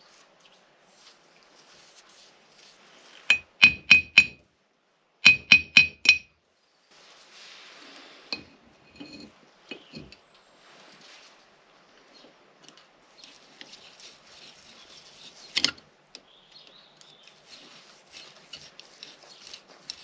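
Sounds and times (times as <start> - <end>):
metal clinking on metal: 3.3 - 4.4, 5.2 - 6.3, 8.4 - 10.2.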